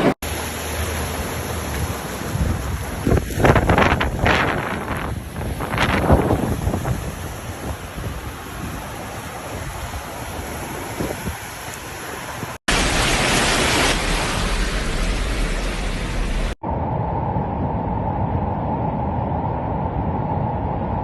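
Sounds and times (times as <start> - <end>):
heavy rain: 0.0 - 16.6
wind: 0.0 - 21.0.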